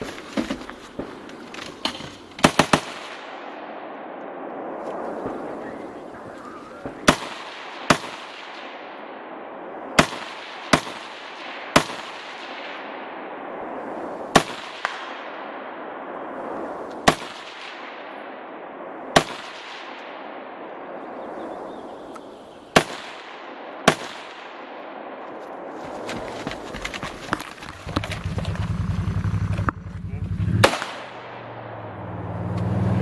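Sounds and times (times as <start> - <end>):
steady background hiss: 0.0 - 33.0
rifle shots echoing: 2.4 - 21.7, 22.3 - 25.7, 30.0 - 32.3.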